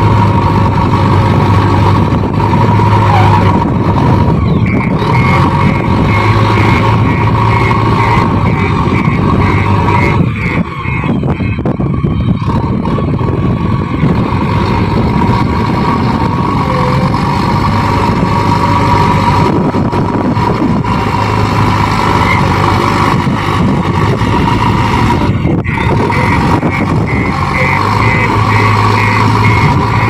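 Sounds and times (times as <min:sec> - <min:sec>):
diesel engine running: 0:00.0 - 0:30.0
high beeps: 0:25.6 - 0:30.0.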